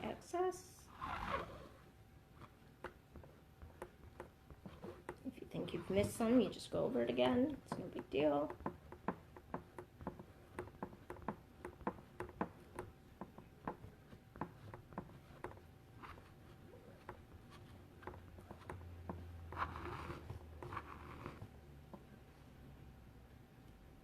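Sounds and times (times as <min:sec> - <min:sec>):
rubbing scrape: 0:00.9 - 0:01.8, 0:19.5 - 0:21.5.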